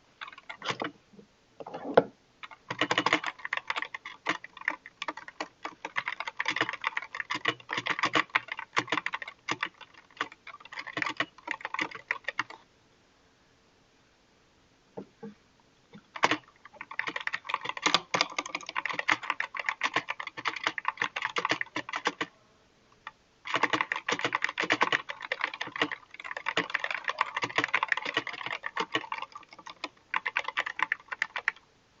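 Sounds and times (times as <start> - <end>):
fast keyboard typing: 0.2 - 0.9, 2.4 - 12.6, 16.0 - 22.3, 23.4 - 31.6.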